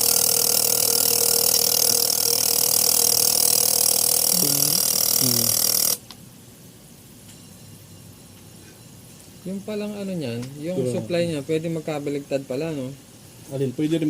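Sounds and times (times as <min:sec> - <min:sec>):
machine humming and hissing: 0:00.0 - 0:06.1.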